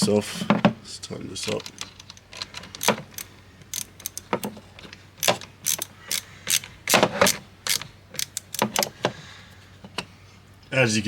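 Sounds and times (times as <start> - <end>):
ratchet wrench clicking: 2.7 - 4.3, 5.2 - 8.9.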